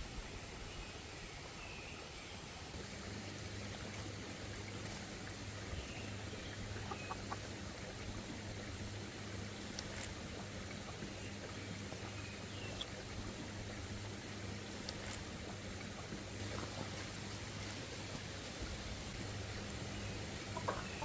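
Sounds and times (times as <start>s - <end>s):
low even hum: 0.0s - 21.0s
outdoor hiss: 15.7s - 21.0s.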